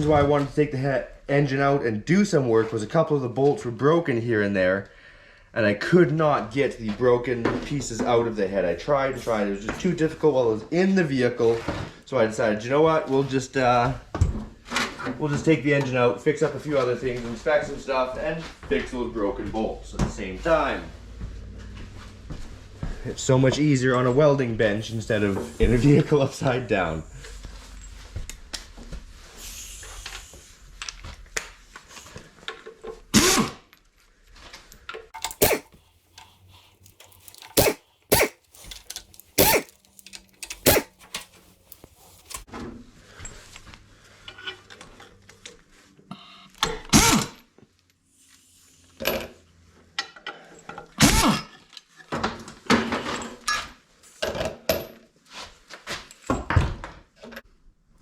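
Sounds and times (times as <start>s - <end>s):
tools and bolts clattering: 35.2s - 42.4s.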